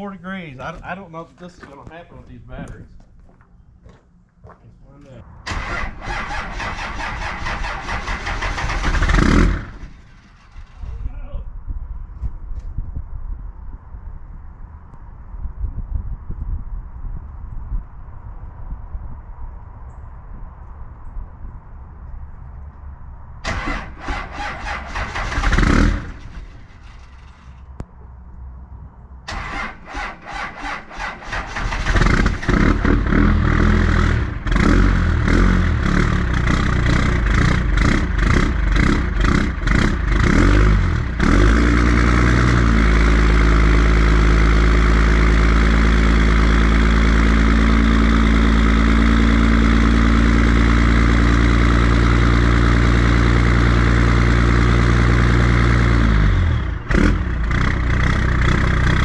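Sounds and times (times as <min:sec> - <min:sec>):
diesel engine cranking: 0:05.5 - 0:11.1, 0:23.4 - 0:27.7, 0:29.3 - 0:54.4
diesel engine running rough: 0:05.5 - 0:11.2, 0:23.4 - 0:27.7, 0:29.3 - 0:59.0.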